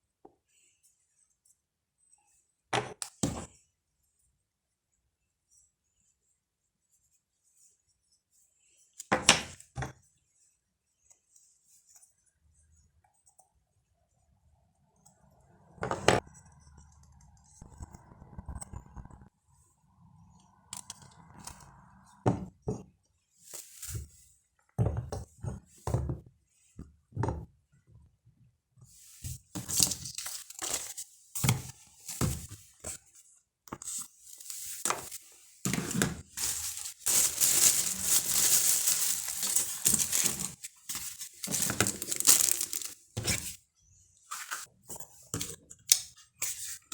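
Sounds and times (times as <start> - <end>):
wrapping crinkling and tearing: 36.4 - 43.6.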